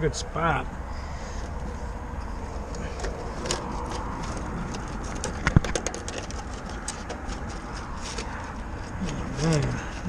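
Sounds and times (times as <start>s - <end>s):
steady low rumble: 0.0s - 5.6s
wiring clicking and rattling: 1.4s - 10.0s
cable tie being fastened: 2.2s - 10.0s.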